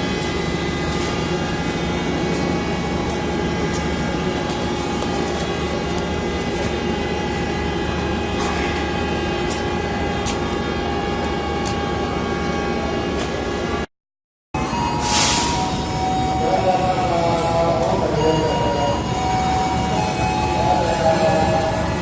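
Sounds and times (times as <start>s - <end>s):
locomotive engine idling: 0.0s - 13.8s.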